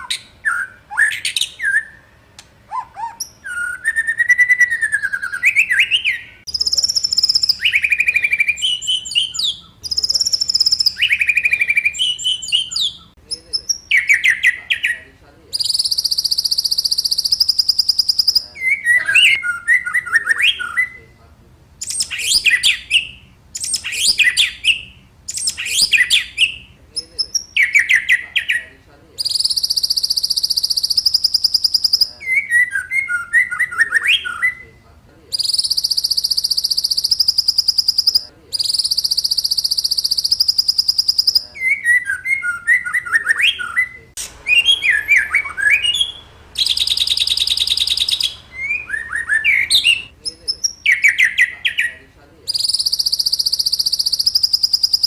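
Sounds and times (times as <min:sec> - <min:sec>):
bird whistled phrases: 0:00.0 - 0:02.1, 0:02.7 - 0:21.2, 0:21.8 - 0:55.0
high buzzy bird trills: 0:00.0 - 0:21.2, 0:29.2 - 0:34.8, 0:35.4 - 0:55.0.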